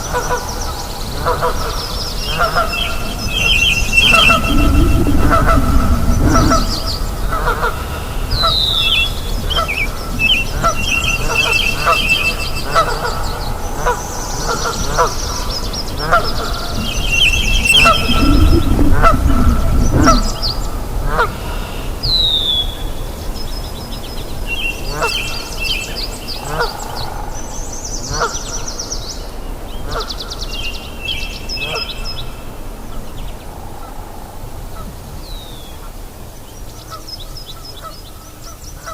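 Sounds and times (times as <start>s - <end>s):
birds chirping and whistling: 2.6s - 7.3s, 16.4s - 20.8s, 24.6s - 27.7s
low rumble: 2.8s - 8.4s, 16.4s - 21.2s
honking animal calls: 17.2s - 20.4s.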